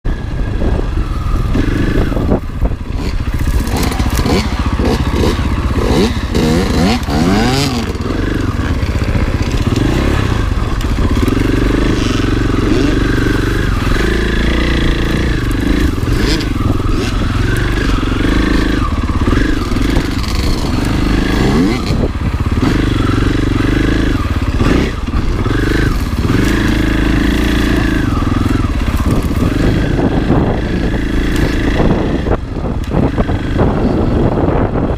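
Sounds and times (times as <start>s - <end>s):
dirt bike engine revving: 0.1s - 34.9s.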